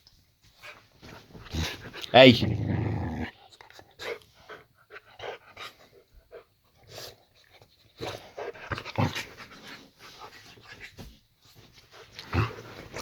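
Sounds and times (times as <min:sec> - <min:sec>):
dog panting: 0:03.5 - 0:11.1.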